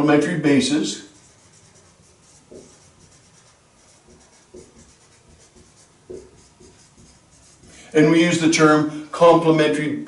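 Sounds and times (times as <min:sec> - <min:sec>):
pen writing strokes: 0:01.2 - 0:07.9.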